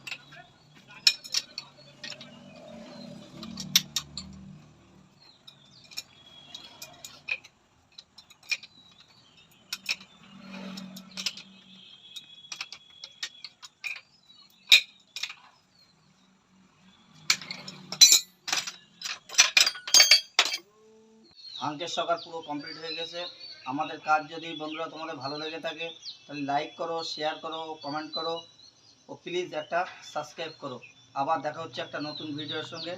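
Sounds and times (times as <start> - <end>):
metal tools clinking: 0.0 - 15.6, 17.1 - 20.7.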